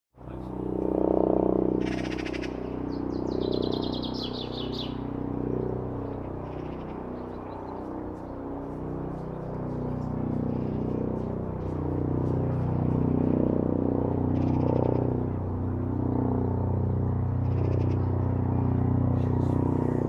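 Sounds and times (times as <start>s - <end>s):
helicopter passing over: 0.2s - 20.0s
small birds chirping: 1.9s - 11.8s.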